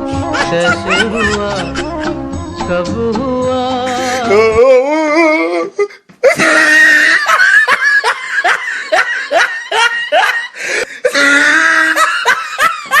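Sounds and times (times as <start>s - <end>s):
loud laughter: 0.2s - 2.2s, 6.3s - 13.0s.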